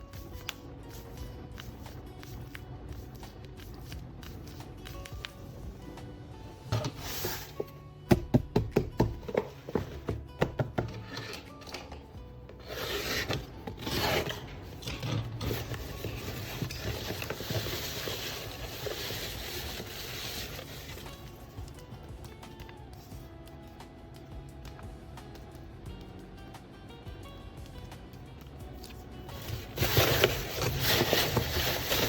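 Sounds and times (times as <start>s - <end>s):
background music: 0.0s - 32.0s
paper rustling: 12.6s - 21.3s, 28.8s - 32.0s.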